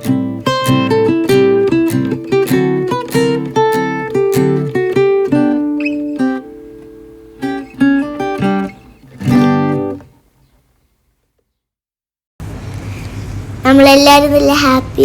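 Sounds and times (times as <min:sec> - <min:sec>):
acoustic guitar strummed chords: 0:00.0 - 0:10.2.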